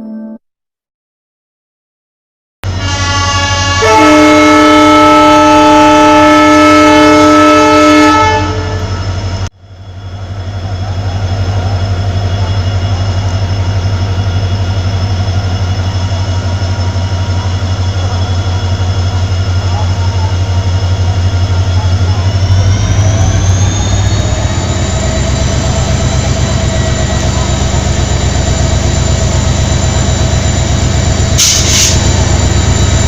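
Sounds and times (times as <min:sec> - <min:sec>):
loud locomotive horn blast: 0:02.6 - 0:09.1, 0:31.3 - 0:33.0
low rumble of train running: 0:02.7 - 0:33.0.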